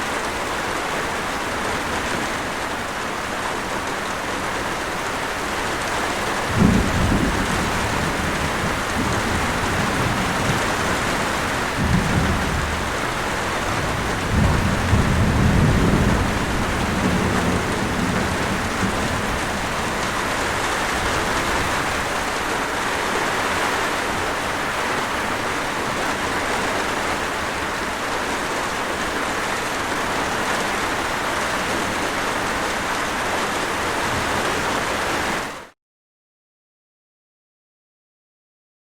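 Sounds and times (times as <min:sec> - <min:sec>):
light rain: 0:00.0 - 0:35.8
distant thunder rumbling: 0:06.4 - 0:22.2.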